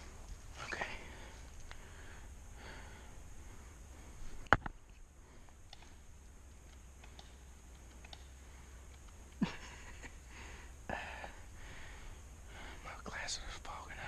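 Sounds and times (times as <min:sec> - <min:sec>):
faint clicks: 0:01.5 - 0:01.8, 0:04.4 - 0:09.5.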